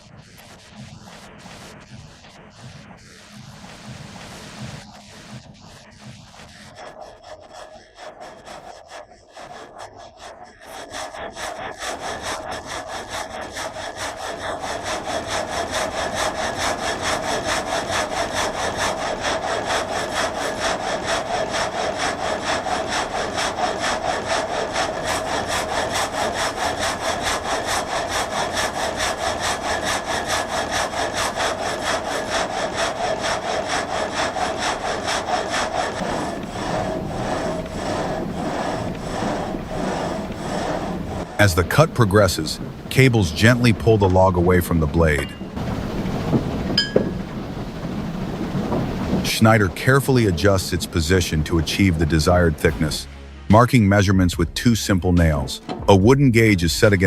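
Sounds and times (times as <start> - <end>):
frame saw cutting log: 10.6 - 53.6, 54.8 - 57.0.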